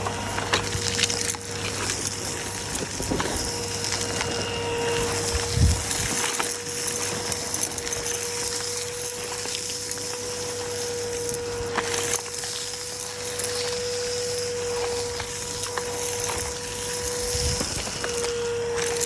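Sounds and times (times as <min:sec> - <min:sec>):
debris rattling up hose: 0:00.0 - 0:19.0
vacuum cleaner running: 0:00.0 - 0:19.0.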